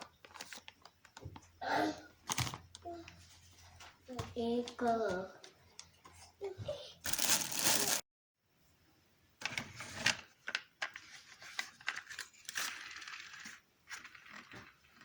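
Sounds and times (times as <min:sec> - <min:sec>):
packaging crinkling and tearing: 0:07.1 - 0:08.0.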